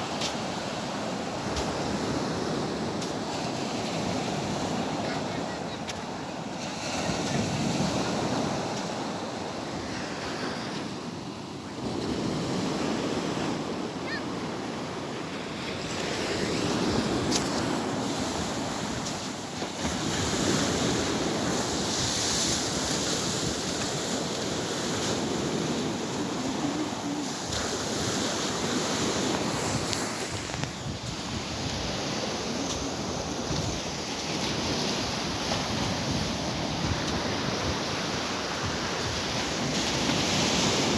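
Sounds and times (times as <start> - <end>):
sea water rushing and splashing: 0.0 - 40.9
wind buffeting microphone: 15.9 - 40.9.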